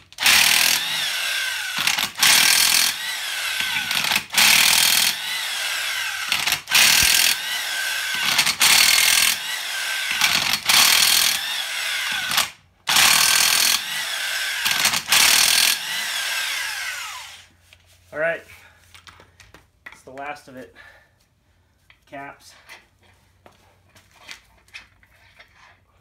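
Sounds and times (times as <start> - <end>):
power wrench bursts: 0.1 - 17.5.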